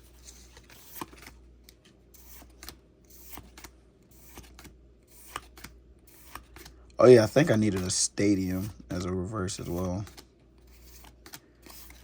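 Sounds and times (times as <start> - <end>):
cards flipped through by hand: 0.0 - 6.8, 9.7 - 12.0.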